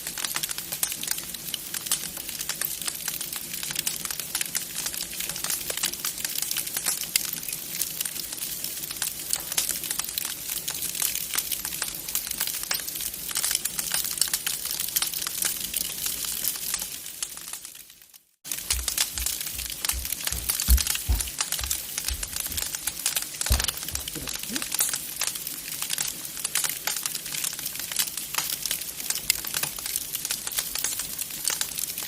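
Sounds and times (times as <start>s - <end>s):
wood fire crackling: 0.0s - 32.0s
low thuds: 18.8s - 22.8s, 23.5s - 24.6s.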